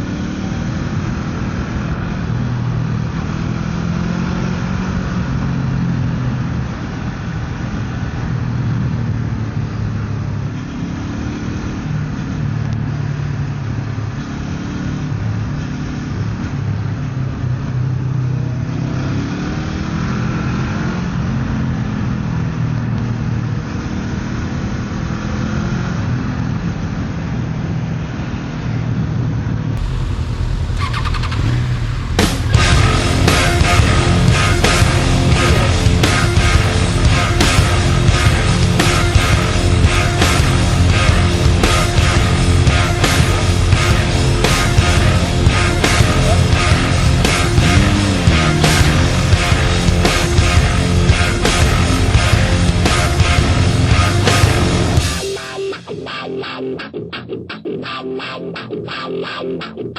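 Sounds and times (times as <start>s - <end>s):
motorcycle engine running: 29.8s - 56.2s.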